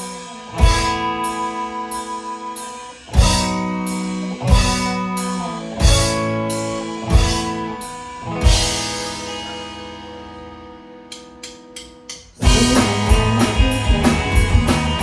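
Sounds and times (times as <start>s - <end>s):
band playing chord hits: 3.1s - 15.0s.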